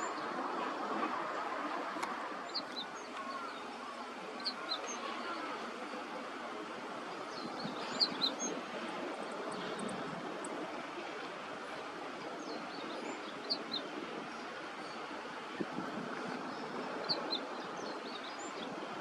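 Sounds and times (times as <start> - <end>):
steady low background noise: 0.0 - 19.0
songbird chirps: 1.6 - 19.0.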